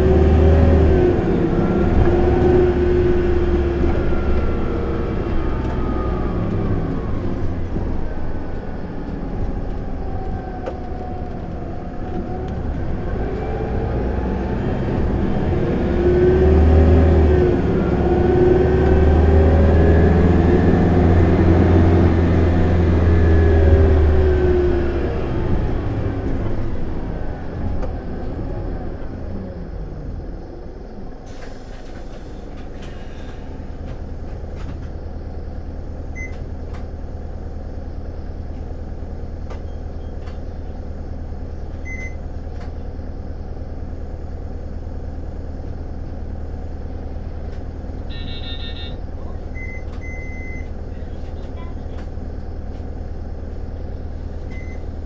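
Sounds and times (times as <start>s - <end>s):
bus diesel engine revving: 0.0s - 55.0s.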